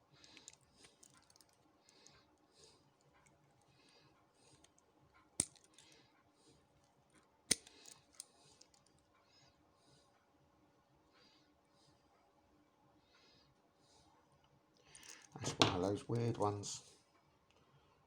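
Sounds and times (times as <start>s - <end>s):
small metal clicks: 0.2s - 2.1s, 5.4s - 6.0s, 7.2s - 9.0s.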